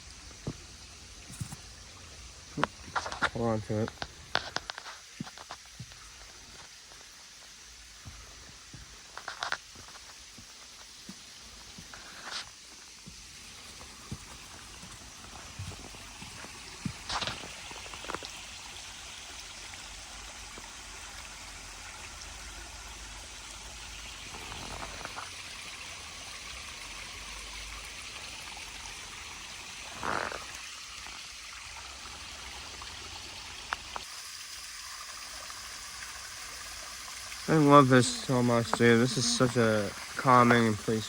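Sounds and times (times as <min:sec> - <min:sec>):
waterfall and creek rushing: 0:08.0 - 0:18.4, 0:29.9 - 0:41.0.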